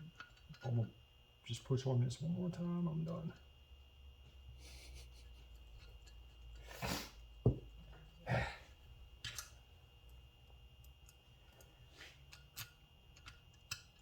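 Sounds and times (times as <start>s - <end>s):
small metal parts clicking and scraping: 11.0s - 14.0s.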